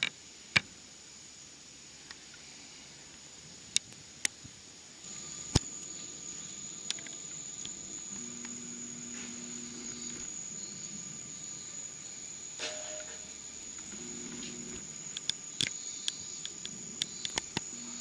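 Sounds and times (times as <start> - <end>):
low steady hum: 4.2 - 18.0.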